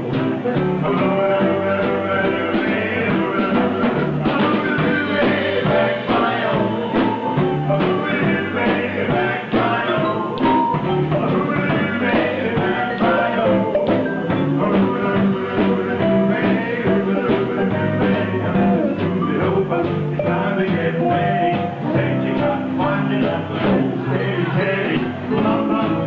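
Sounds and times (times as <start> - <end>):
live rock band playing: 0.0 - 26.0.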